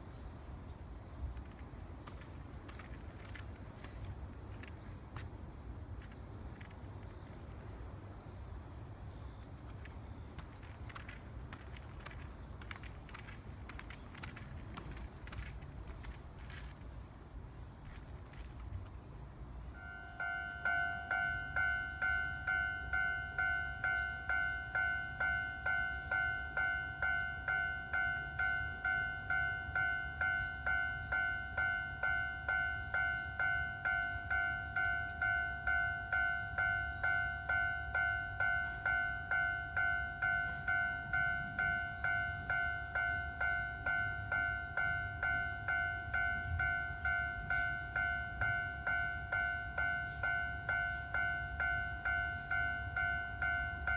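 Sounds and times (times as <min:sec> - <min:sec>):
railroad crossing warning bell: 0:19.7 - 0:53.9.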